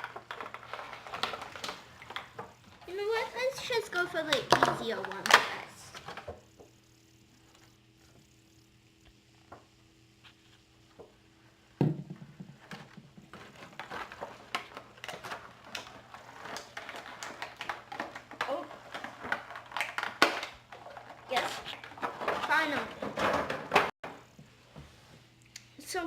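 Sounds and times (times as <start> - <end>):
plastic and cardboard crackling: 0.0 - 6.4, 12.2 - 24.0.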